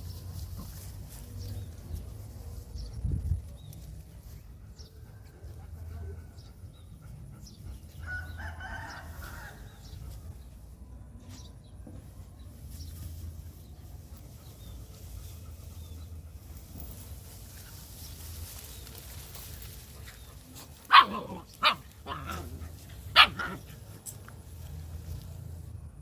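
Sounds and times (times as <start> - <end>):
dog barking: 20.9 - 22.3, 23.2 - 23.6.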